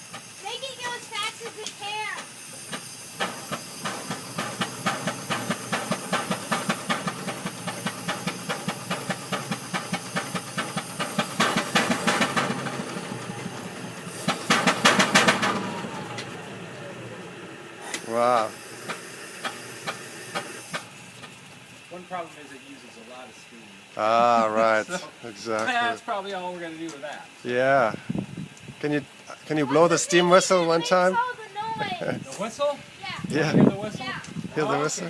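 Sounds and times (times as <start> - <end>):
steam engine exhaust chuffing: 0.0 - 25.5
hissing steam: 0.0 - 35.0.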